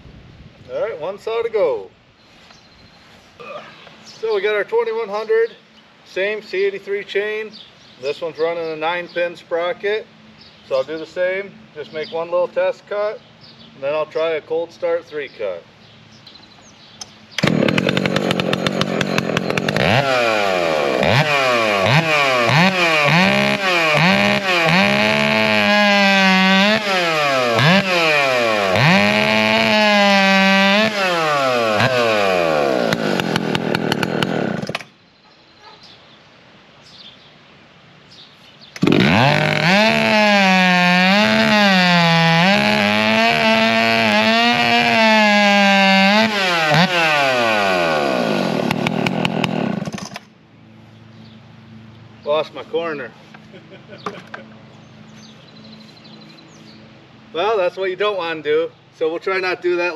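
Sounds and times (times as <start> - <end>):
chainsaw cutting at full throttle: 17.4 - 34.9, 38.8 - 50.2.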